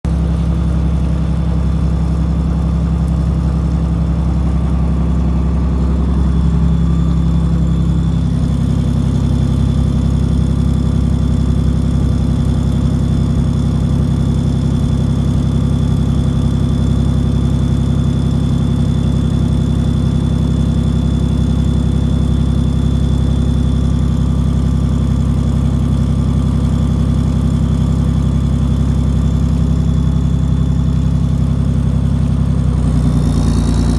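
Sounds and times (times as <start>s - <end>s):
vehicle engine droning: 0.1s - 33.9s
faint high whine: 2.6s - 10.2s.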